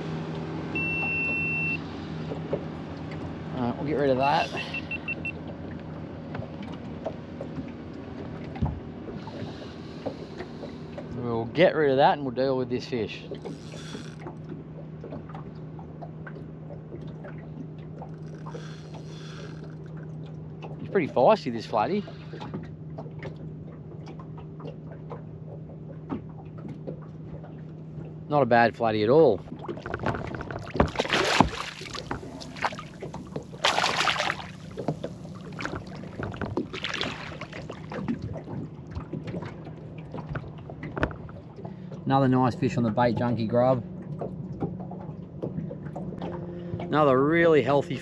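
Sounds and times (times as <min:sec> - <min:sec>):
steady low hum: 0:27.2 - 0:48.0
wet handling of fish: 0:29.6 - 0:41.8.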